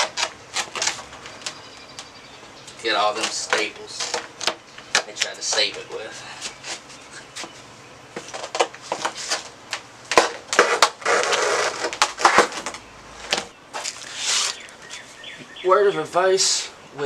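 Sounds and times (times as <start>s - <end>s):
fabric ripping and scraping: 10.1s - 12.7s, 14.0s - 14.7s
rasping tear: 10.1s - 12.8s.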